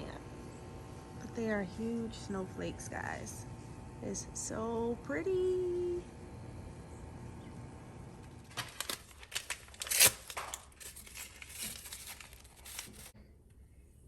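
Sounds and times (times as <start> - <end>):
crackling and rustling: 8.2 - 13.2.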